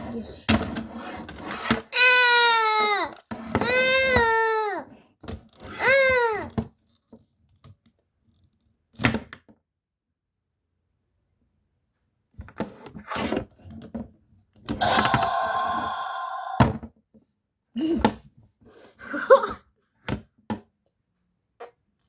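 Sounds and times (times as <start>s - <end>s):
plastic toys knocking together: 14.8s - 16.6s
roar-like cry: 14.8s - 16.7s.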